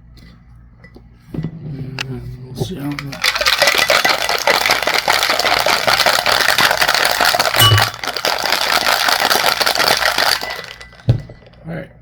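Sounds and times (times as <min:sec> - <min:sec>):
ice rattling in cocktail shaker: 0:02.8 - 0:11.6.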